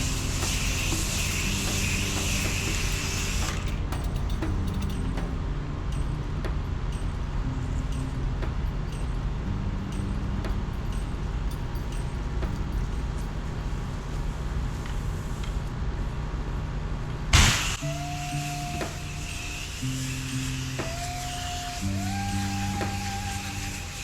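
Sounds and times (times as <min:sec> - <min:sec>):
pressure washer engine running: 0:00.0 - 0:03.9, 0:17.4 - 0:24.0
spray hissing: 0:00.0 - 0:04.0, 0:17.4 - 0:24.0.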